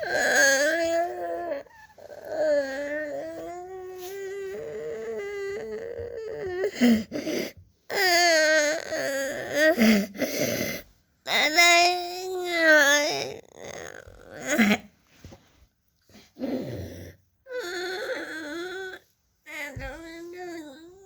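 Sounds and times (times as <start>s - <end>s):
young child crying: 19.5s - 21.0s.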